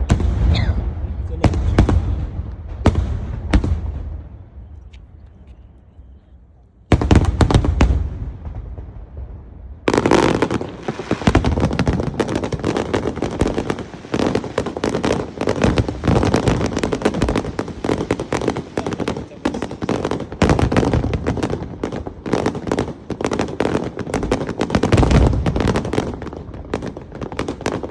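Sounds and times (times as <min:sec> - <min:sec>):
fireworks bangs and crackling: 0:00.0 - 0:06.1, 0:06.9 - 0:27.9.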